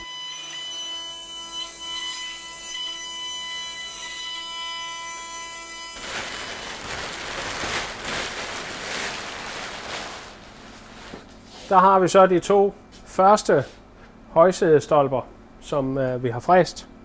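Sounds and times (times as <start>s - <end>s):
cnc router machine whine: 0.0s - 6.0s.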